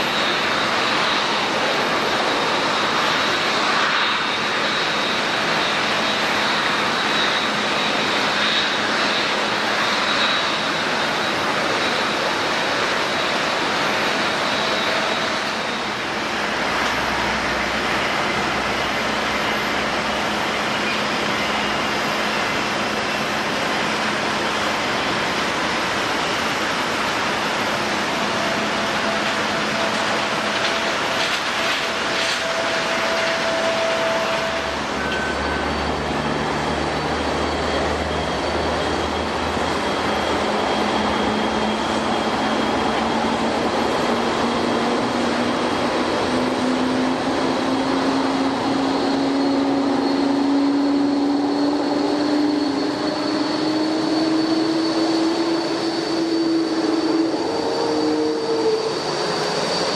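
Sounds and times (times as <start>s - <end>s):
jet engines running: 0.0s - 59.9s.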